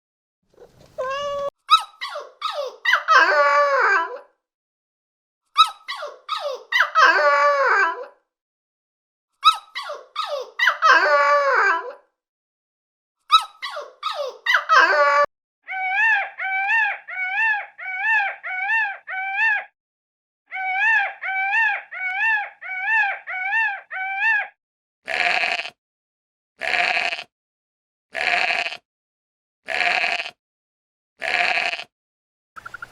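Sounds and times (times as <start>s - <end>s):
animal squeaky yelps: 1.0s - 4.2s, 5.6s - 7.5s, 9.4s - 11.2s, 13.3s - 19.7s, 20.5s - 24.6s.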